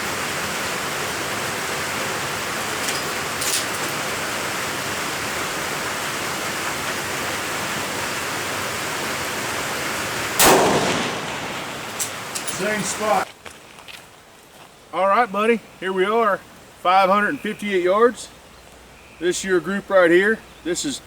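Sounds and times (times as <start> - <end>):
rain hiss: 0.0 - 21.0
rifle shot: 10.4 - 12.4.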